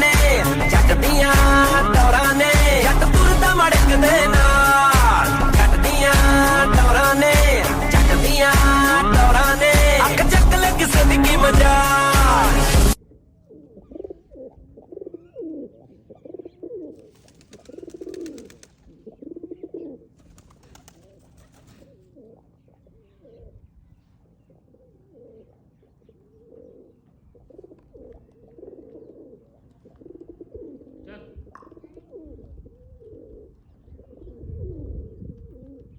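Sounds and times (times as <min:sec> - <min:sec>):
pigeon cooing: 0:13.0 - 0:23.7, 0:24.3 - 0:35.9.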